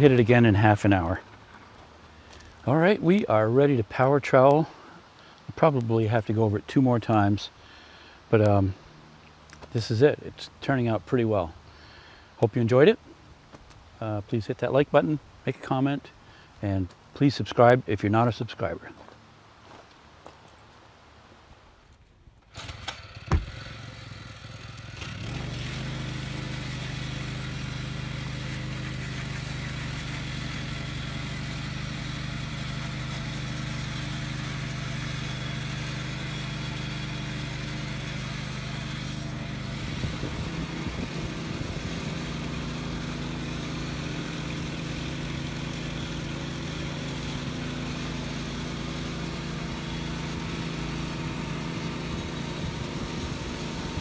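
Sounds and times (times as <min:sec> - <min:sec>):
small gasoline engine running: 0:22.5 - 0:54.0.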